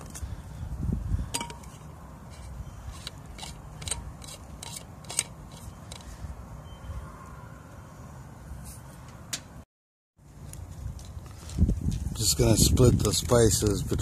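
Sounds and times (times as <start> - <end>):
wind buffeting microphone: 0.0 - 1.7, 10.7 - 14.0.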